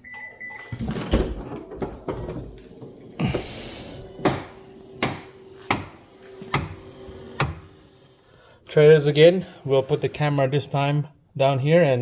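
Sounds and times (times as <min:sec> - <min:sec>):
liftgate motor hum: 0:02.2 - 0:08.3.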